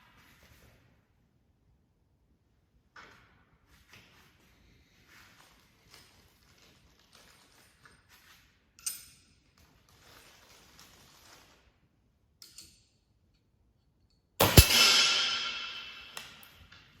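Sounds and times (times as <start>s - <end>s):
air rifle shot: 14.4s - 16.4s.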